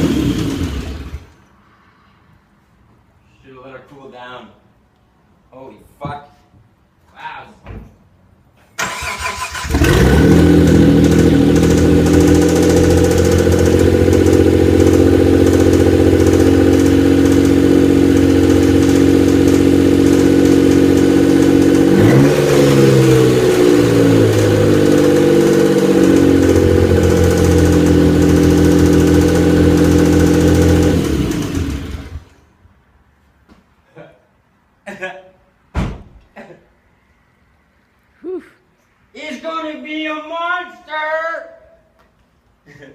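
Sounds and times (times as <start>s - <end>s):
car engine cranking and idling: 0.0s - 1.5s, 8.8s - 32.5s.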